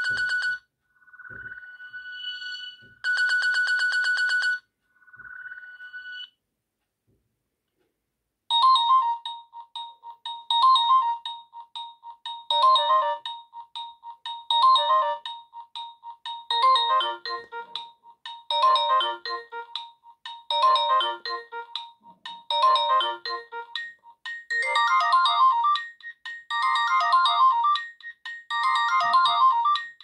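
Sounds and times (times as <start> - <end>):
electronic ringtone melody: 0.0 - 0.6, 8.5 - 30.0
electronic ringtone trill: 8.5 - 30.0.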